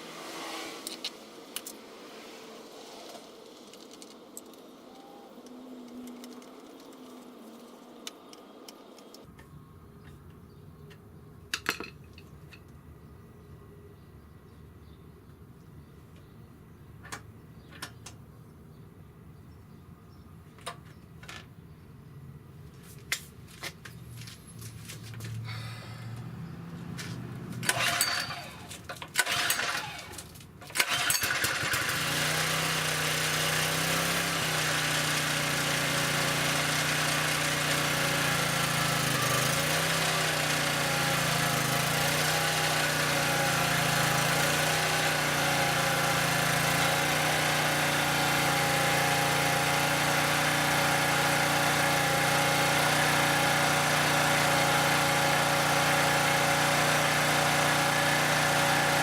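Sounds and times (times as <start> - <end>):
small gas engine running: 0.0 - 8.2, 25.3 - 59.0
pull-start cord pulls: 27.6 - 59.0.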